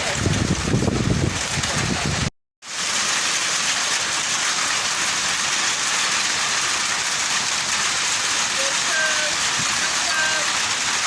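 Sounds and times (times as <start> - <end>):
heavy rain falling: 0.0 - 11.0.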